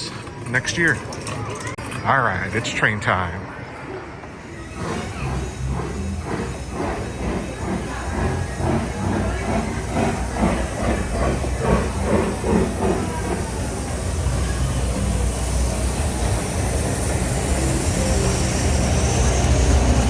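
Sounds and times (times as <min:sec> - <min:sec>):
train locomotive chugging: 0:00.0 - 0:03.4, 0:04.2 - 0:20.0.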